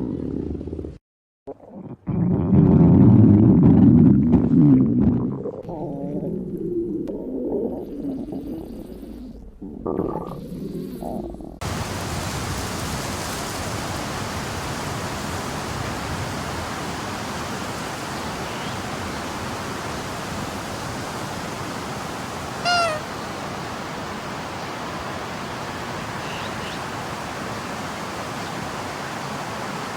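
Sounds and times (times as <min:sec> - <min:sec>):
stomach rumbling: 0:00.0 - 0:11.6
high squeaky gurgle: 0:22.6 - 0:23.3.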